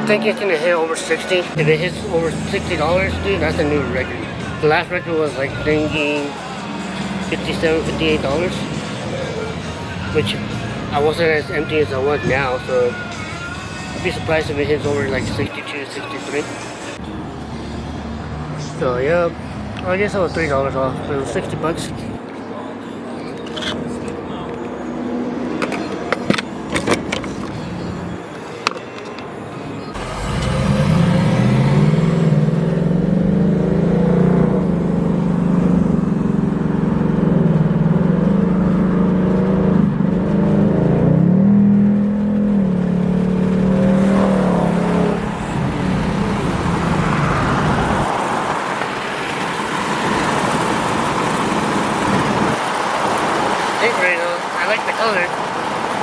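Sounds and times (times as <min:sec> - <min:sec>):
car engine running: 0:29.9 - 0:53.3.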